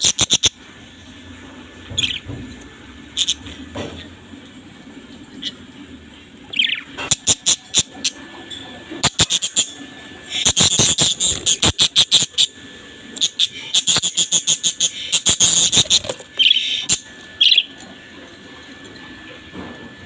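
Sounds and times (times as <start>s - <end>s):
budgerigars chirping: 0.0s - 0.5s, 1.9s - 2.2s, 6.5s - 8.2s, 9.0s - 12.5s, 13.2s - 17.7s
budgerigar trills: 0.0s - 0.6s, 9.0s - 12.5s, 13.2s - 17.7s.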